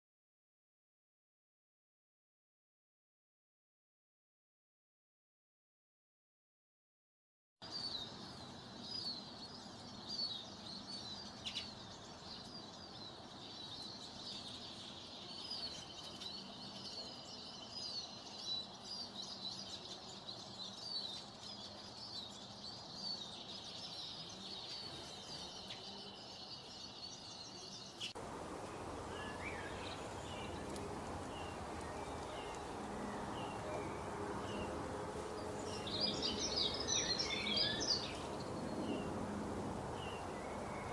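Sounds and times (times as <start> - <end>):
small birds chirping: 7.6 - 40.9
noisy background: 28.2 - 40.9.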